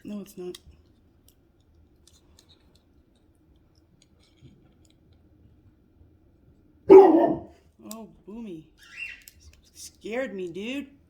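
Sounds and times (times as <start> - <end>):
faint metal clicks and scratches: 0.2 - 5.3.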